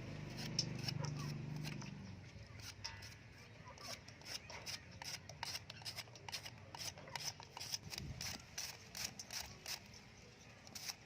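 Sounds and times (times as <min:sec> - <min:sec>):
knife cutting vegetables: 0:00.2 - 0:03.2.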